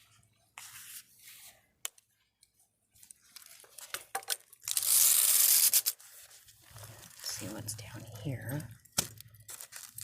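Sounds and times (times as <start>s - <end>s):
fabric and plastic rustling: 5.8s - 10.0s.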